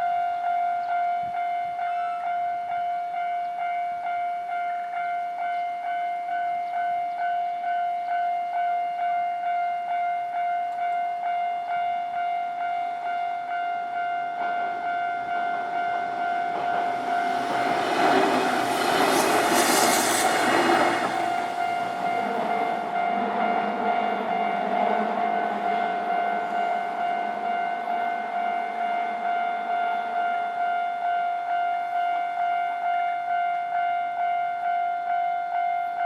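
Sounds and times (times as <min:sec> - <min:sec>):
level crossing warning signal: 0:00.2 - 0:36.0
electric train passing: 0:11.1 - 0:34.7.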